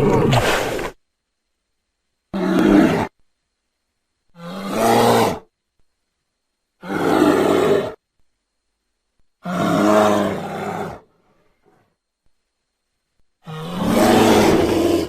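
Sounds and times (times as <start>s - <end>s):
bear calling: 13.4s - 15.0s.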